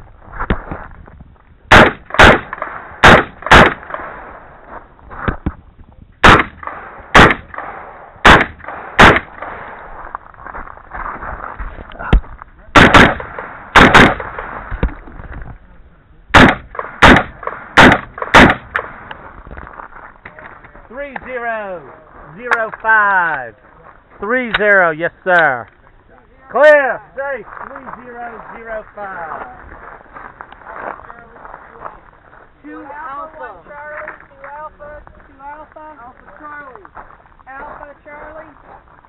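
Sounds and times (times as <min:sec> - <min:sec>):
faint distant rifle shots: 0:01.7 - 0:04.5, 0:06.2 - 0:09.9, 0:12.8 - 0:14.8, 0:16.3 - 0:19.1
rifle shots: 0:01.7 - 0:04.5, 0:06.2 - 0:10.0, 0:12.7 - 0:14.8, 0:16.3 - 0:19.2.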